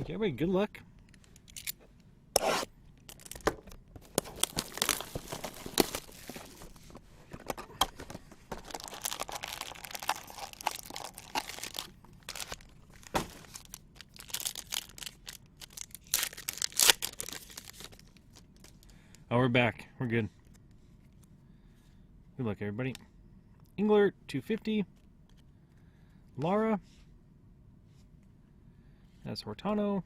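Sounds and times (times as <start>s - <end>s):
card packs being torn open: 2.4s - 6.8s, 7.4s - 19.0s.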